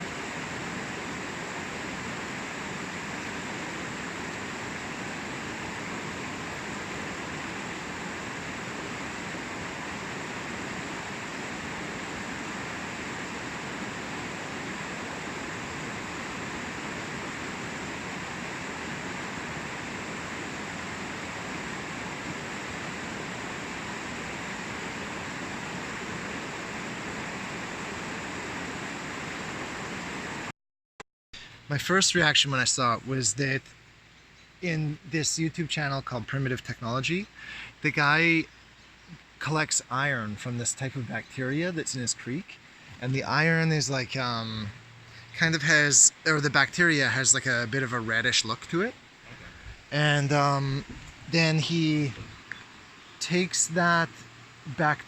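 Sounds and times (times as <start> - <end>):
river water rushing: 0.0 - 30.5, 42.5 - 55.0.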